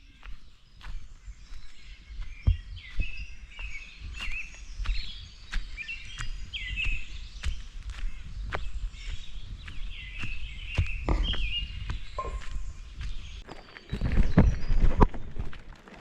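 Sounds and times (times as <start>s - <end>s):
songbirds singing: 0.0s - 15.7s
footsteps on forest floor: 0.0s - 16.0s.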